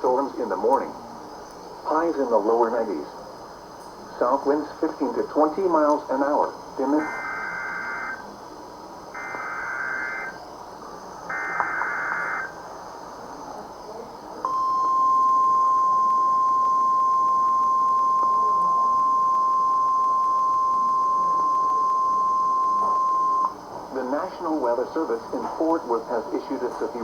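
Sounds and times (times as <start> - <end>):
steady warning alarm tone: 6.8 - 8.3, 9.2 - 10.4, 11.3 - 12.6, 14.4 - 23.6.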